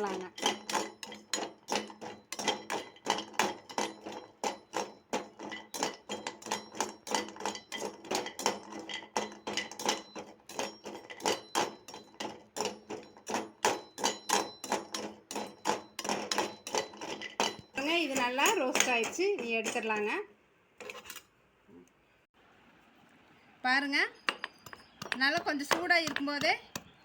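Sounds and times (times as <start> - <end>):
spoon scraping pan: 0.0 - 21.3.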